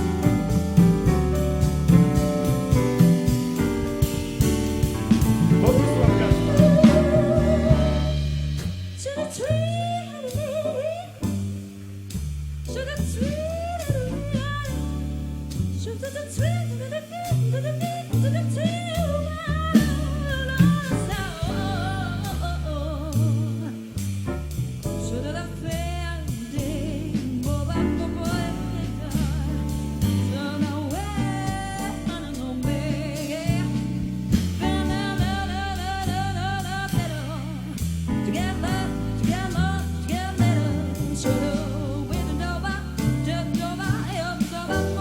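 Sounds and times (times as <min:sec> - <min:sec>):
walking bass line: 0:00.0 - 0:10.6, 0:17.6 - 0:45.0
drum kit: 0:00.0 - 0:45.0
vocal group singing in harmony: 0:05.5 - 0:08.6, 0:34.6 - 0:45.0.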